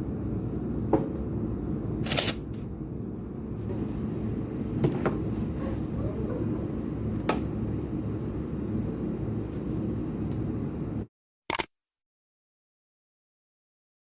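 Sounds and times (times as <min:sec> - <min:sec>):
single click: 0:11.5 - 0:11.7.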